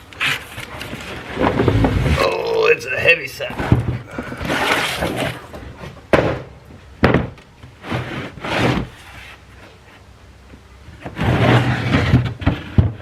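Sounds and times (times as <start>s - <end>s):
sharp knocks and thunks: 1.4s - 2.2s, 6.1s - 7.4s
scraping and rubbing: 3.6s - 6.0s, 7.8s - 10.0s.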